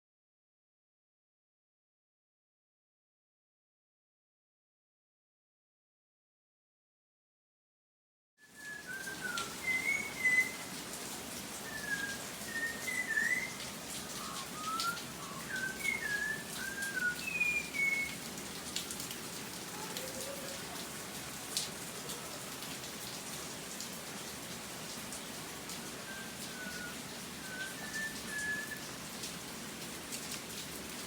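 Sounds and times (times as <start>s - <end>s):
rain hiss: 8.5s - 31.0s
birds whistling: 8.8s - 10.6s, 11.7s - 13.6s, 14.2s - 18.2s.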